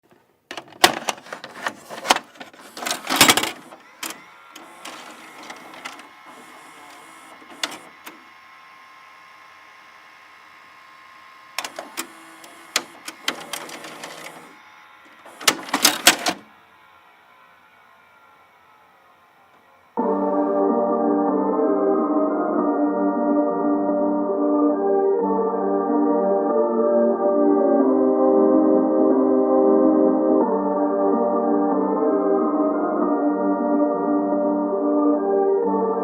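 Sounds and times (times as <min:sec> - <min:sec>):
whirring hum: 0:00.2 - 0:21.9
mechanical clicking and clattering: 0:00.5 - 0:08.3, 0:11.6 - 0:16.6.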